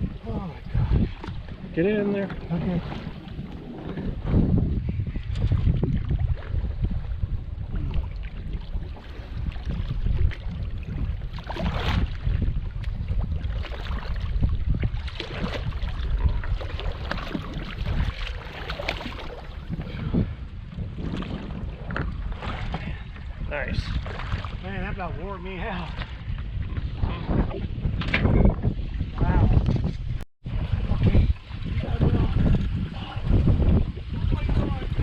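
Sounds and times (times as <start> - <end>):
water splashing against hull: 0.0 - 35.0
wind buffeting microphone: 0.0 - 35.0.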